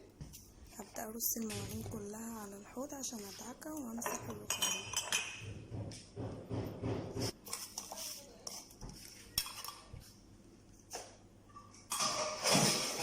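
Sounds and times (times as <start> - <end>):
dishes and cutlery clinking: 3.7 - 5.6, 9.3 - 10.0, 11.5 - 13.0.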